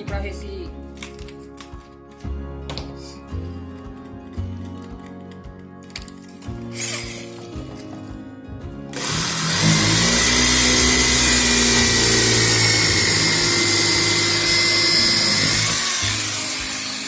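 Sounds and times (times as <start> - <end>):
electric drill boring into wood: 9.0 - 17.0.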